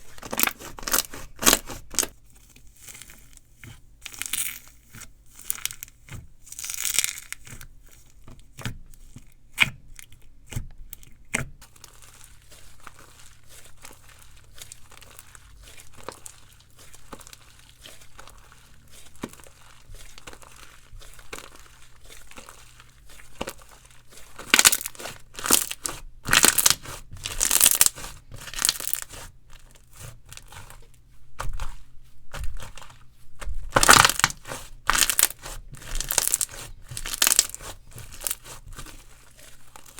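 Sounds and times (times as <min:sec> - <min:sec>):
slime crackling and squishing: 0:00.0 - 0:39.9
slime clicking and popping: 0:06.5 - 0:07.5, 0:24.4 - 0:29.0, 0:33.7 - 0:38.4.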